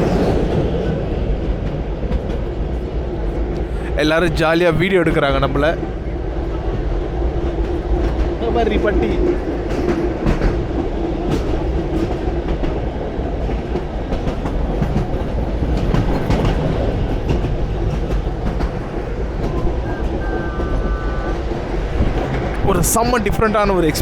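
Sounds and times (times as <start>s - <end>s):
train wheels rumbling on rails: 0.0s - 24.0s
brief steady tone: 19.4s - 21.4s.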